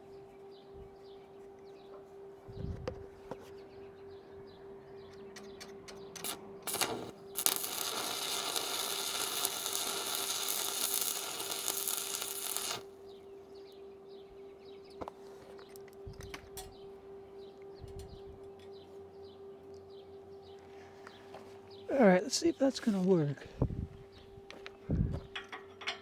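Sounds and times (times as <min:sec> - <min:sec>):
welding arc crackling: 0:06.2 - 0:12.9.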